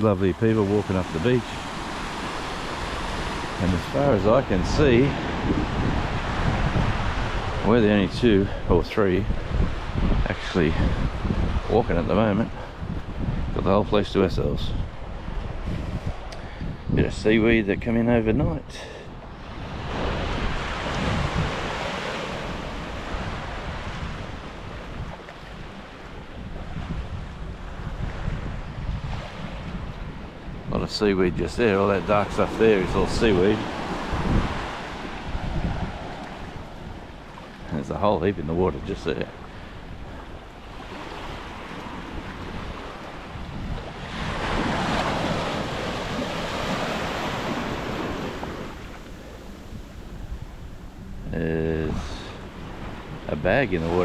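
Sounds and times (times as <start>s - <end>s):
surf breaking on sand: 0.0s - 12.4s, 19.4s - 25.8s, 31.5s - 39.2s, 39.8s - 54.0s
wind rumbling on microphone: 0.0s - 54.0s.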